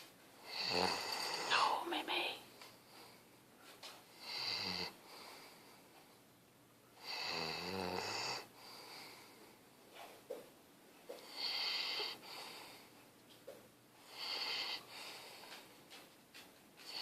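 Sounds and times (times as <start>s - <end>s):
quiet breathing: 0.0s - 6.3s, 8.0s - 10.3s, 11.1s - 17.0s
person snoring: 7.0s - 8.5s.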